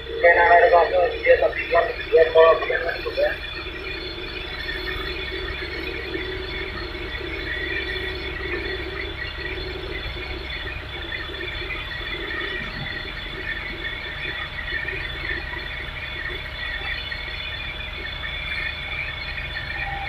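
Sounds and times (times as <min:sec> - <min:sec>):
excavator engine and hydraulics: 0:00.0 - 0:20.0
high hydraulic whine: 0:00.0 - 0:20.0.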